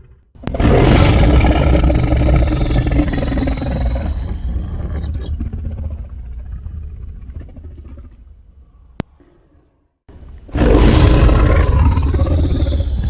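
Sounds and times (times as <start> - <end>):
monster roar: 0.5 - 5.4, 10.6 - 13.0.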